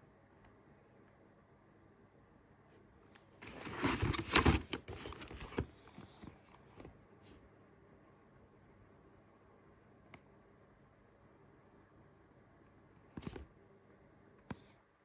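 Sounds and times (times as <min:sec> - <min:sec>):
packaging rustling and crinkling: 0:03.4 - 0:06.5.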